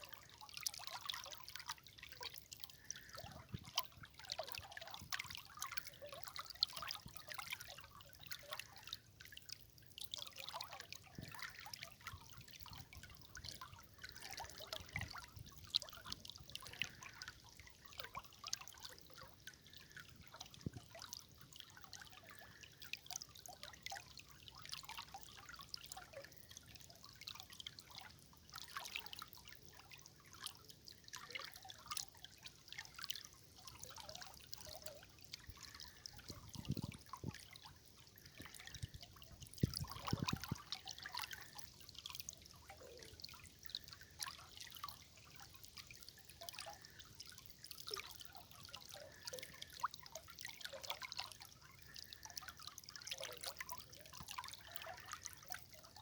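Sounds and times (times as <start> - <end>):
deep water gurgles: 0.0 - 23.9, 32.6 - 56.0
water trickling over stones: 0.0 - 56.0.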